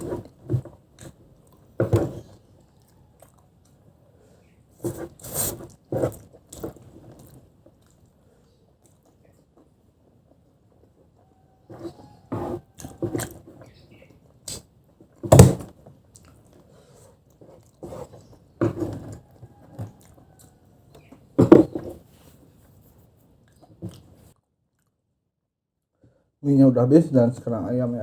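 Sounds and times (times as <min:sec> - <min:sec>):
chewing mouth noises: 0:02.6 - 0:03.8, 0:05.2 - 0:09.8, 0:16.0 - 0:21.3, 0:23.4 - 0:25.0.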